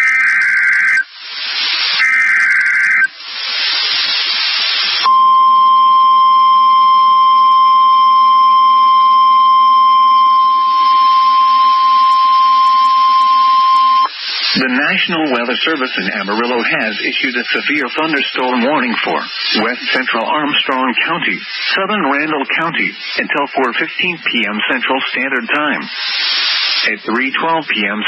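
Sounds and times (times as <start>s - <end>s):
high steady alarm tone: 0.0s - 1.1s, 1.8s - 3.1s, 4.9s - 27.2s
raspy digital data burst: 0.0s - 5.1s, 12.0s - 28.0s
radio static: 0.0s - 6.2s, 7.9s - 28.0s.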